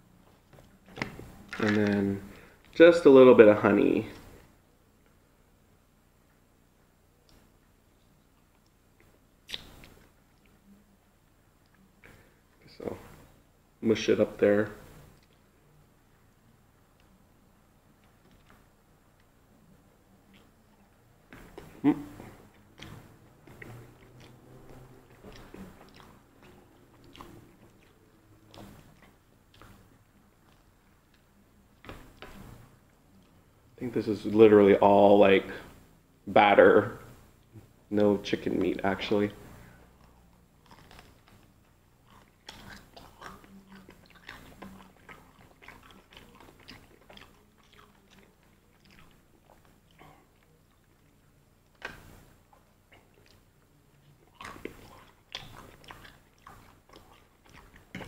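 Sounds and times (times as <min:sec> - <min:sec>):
person chewing food: 0:17.9 - 0:19.3, 0:20.1 - 0:33.5, 0:39.4 - 0:58.0.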